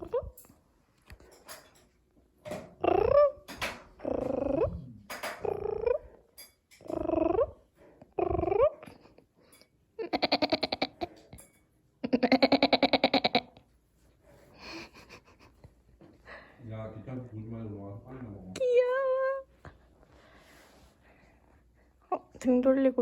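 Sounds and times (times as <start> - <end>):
woman making meow-like calls: 6.9 - 7.6.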